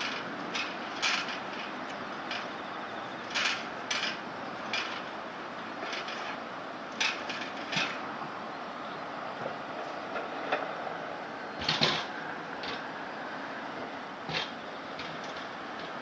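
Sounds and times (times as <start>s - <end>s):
steady background hiss: 0.0s - 16.0s
sharp knocks and clatters: 7.0s - 8.0s, 11.6s - 12.8s.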